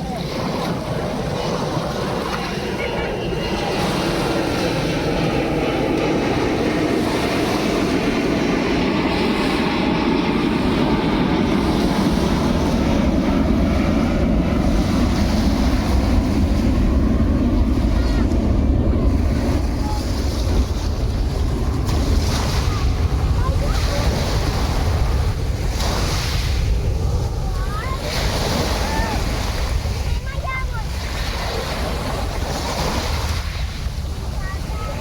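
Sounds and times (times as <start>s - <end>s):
rushing sea water: 0.0s - 35.0s
wind buffeting microphone: 0.0s - 35.0s.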